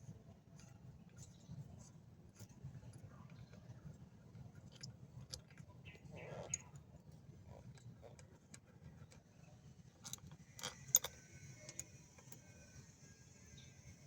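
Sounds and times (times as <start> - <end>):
light metallic clicks and clinks: 4.3 - 6.9, 10.0 - 12.8.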